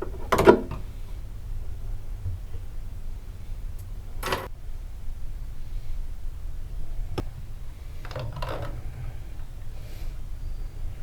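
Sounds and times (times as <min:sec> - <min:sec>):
low rumble: 0:00.8 - 0:11.0
rustling and scraping: 0:07.1 - 0:11.0.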